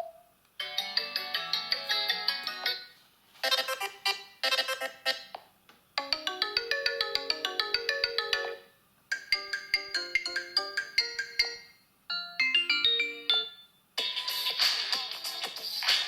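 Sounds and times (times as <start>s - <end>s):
phone ringtone melodies: 0.0s - 2.9s, 6.0s - 14.4s.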